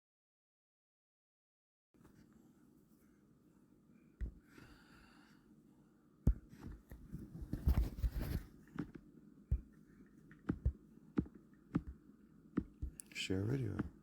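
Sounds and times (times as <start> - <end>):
rustling and knocking: 6.3 - 9.7, 10.4 - 12.0, 12.6 - 13.0
taps on phone touchscreen: 10.5 - 12.0, 12.6 - 13.0.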